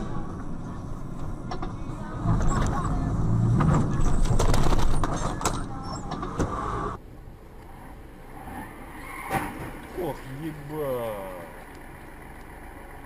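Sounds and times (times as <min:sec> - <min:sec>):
low vehicle rumble: 0:00.0 - 0:13.0.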